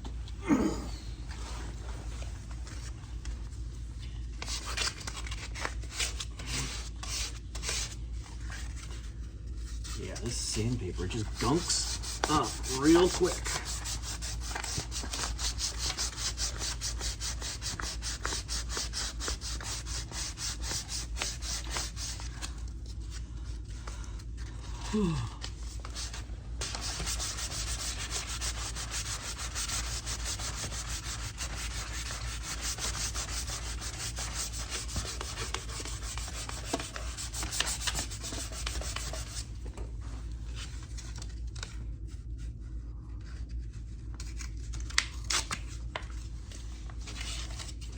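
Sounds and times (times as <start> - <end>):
sandpaper rubbing on steel: 9.9 - 22.3, 26.6 - 39.4.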